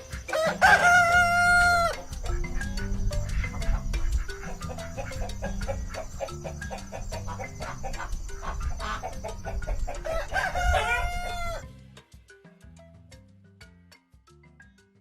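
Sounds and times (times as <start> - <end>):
chickens clucking: 0.0 - 11.6
background music: 0.0 - 15.0
rooster crowing: 0.2 - 11.7.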